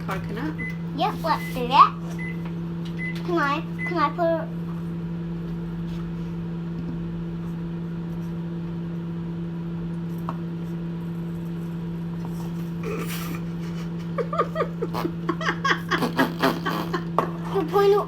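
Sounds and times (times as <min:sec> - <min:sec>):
kitchen appliance humming: 0:00.0 - 0:18.0.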